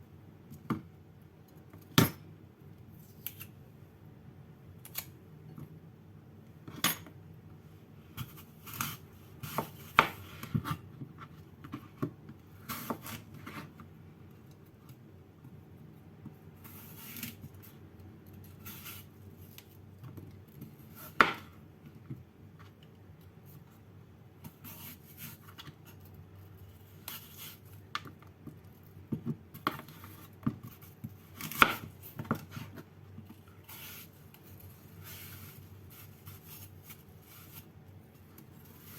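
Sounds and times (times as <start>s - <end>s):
faint steady hum: 0.0s - 38.9s
knife on cutting board: 33.6s - 37.7s.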